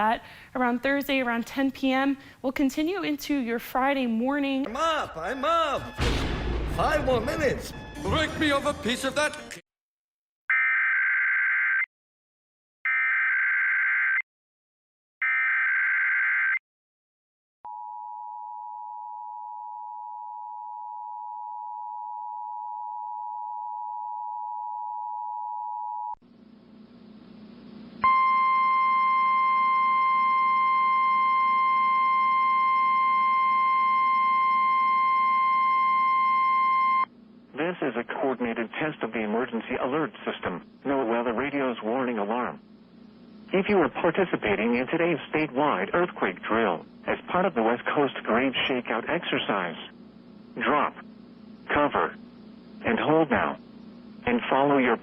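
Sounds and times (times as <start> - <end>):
single-pitch warning alarm tone: 28.0 - 37.1
receiver hiss: 37.1 - 55.0.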